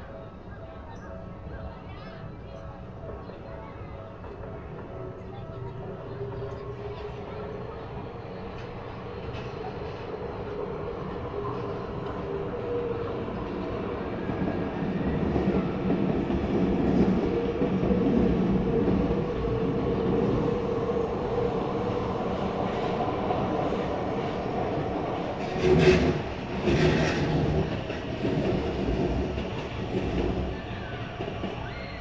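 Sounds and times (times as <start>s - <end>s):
electric train rumbling past: 0.0s - 32.0s
train wheel clacks: 25.3s - 32.0s.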